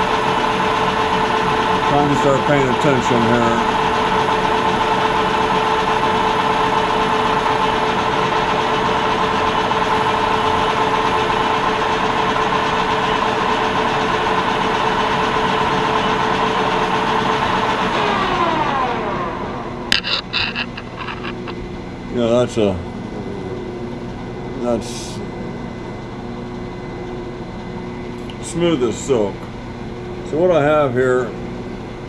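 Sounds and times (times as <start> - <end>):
metal lathe humming and whining: 0.0 - 21.6.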